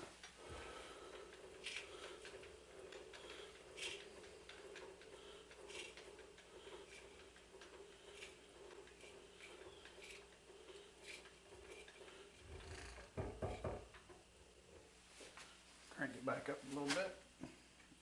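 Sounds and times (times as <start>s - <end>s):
steady low hum: 0.0s - 18.0s
dull knocks: 13.1s - 13.9s.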